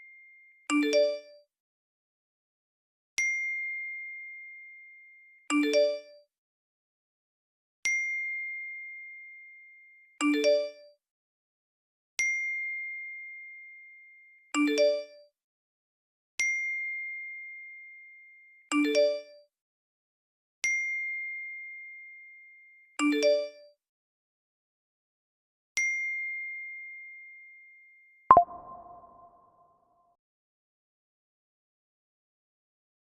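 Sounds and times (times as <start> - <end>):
high notification ding: 28.3 - 29.4.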